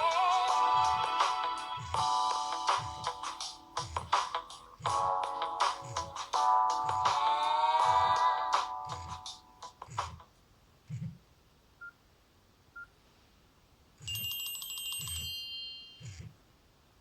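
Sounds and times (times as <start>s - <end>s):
soft low thumps: 1.8s - 10.2s, 10.9s - 11.2s
phone ringtone: 14.0s - 16.2s.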